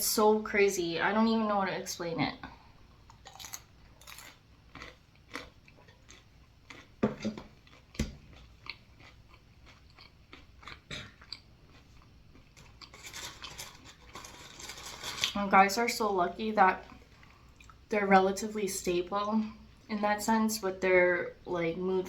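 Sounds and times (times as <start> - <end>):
person chewing and crunching food: 3.0 - 15.4, 16.8 - 17.9.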